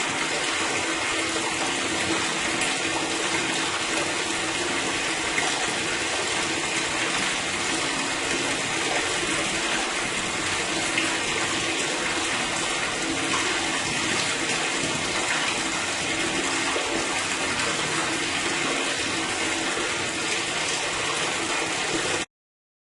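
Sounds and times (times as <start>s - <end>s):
water rushing through sewer drain: 0.0s - 22.3s.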